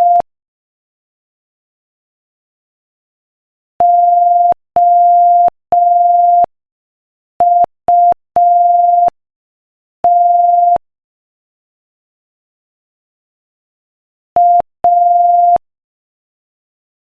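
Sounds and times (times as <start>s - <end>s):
morse code beeps: 0.0s - 0.2s, 3.8s - 6.5s, 7.4s - 9.1s, 10.1s - 10.8s, 14.4s - 15.6s.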